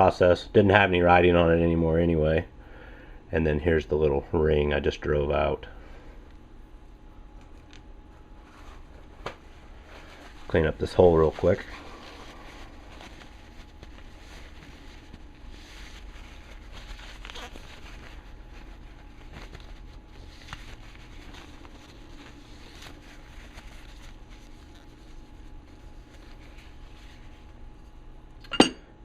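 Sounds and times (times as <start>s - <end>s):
steady low hum: 0.0s - 29.0s
light scraping and rubbing: 8.4s - 27.5s.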